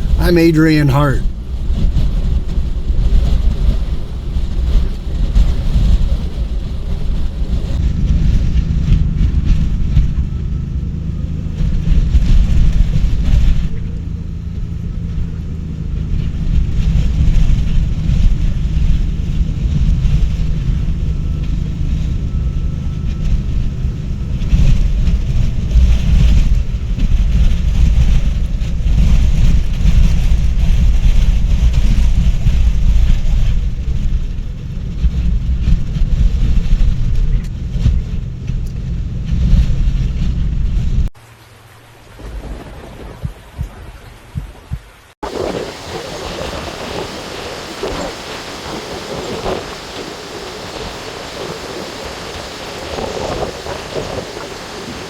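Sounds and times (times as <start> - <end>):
wind buffeting a vehicle: 1.3 - 41.1.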